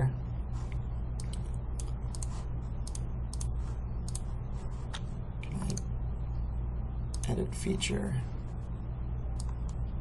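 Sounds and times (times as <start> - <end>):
low steady hum: 0.0 - 10.0
computer keyboard and mouse clicking: 1.2 - 5.9, 9.3 - 9.8.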